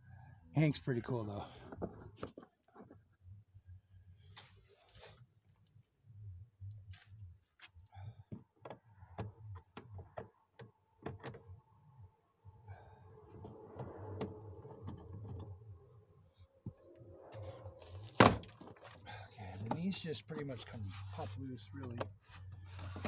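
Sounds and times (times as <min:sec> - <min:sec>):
scraping on plastic: 0:22.3 - 0:23.0.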